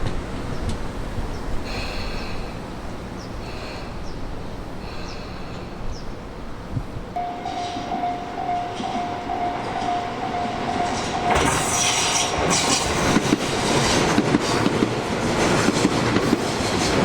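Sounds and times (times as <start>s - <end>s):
electric train running on track: 0.0s - 17.0s
high whine: 6.7s - 14.1s
level-crossing warning bell: 7.2s - 14.2s.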